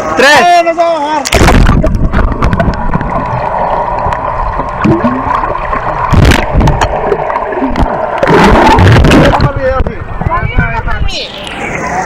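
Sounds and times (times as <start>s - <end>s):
water splashing: 1.2s - 12.0s
water rushing down a slide: 1.3s - 9.8s
wind rumble on microphone: 1.4s - 3.2s, 7.7s - 11.2s.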